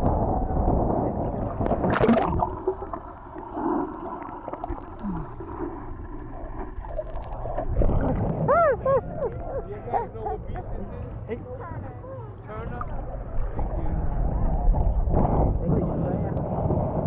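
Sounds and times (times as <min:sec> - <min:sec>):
water sloshing and gurgling: 0:00.0 - 0:17.0
sharp water splash: 0:01.5 - 0:04.1.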